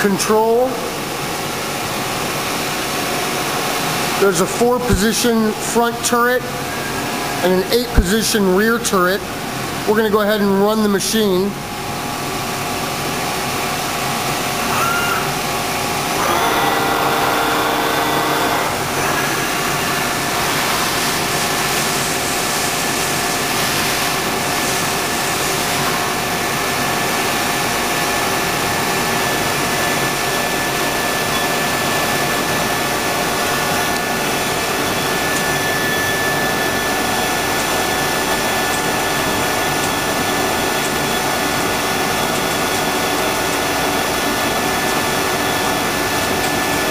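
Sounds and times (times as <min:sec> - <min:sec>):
lathe machine whine: 0:00.0 - 0:46.9
hiss: 0:19.4 - 0:26.0.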